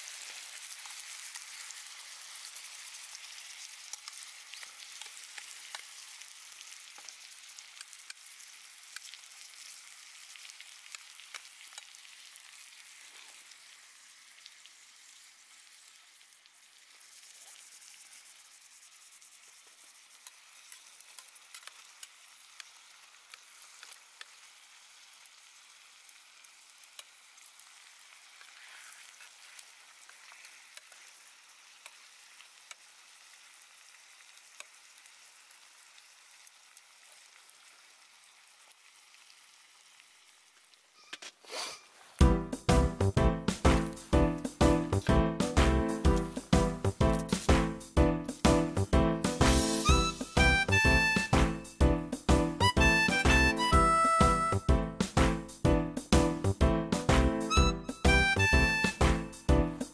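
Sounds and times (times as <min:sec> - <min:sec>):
campfire sizzling and crackling: 0:00.0 - 0:59.9.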